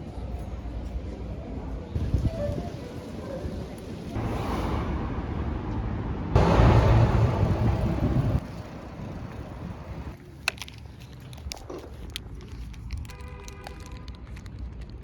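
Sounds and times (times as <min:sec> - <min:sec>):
traffic noise: 0:00.0 - 0:15.0
wind on microphone: 0:02.0 - 0:05.0, 0:06.9 - 0:10.2.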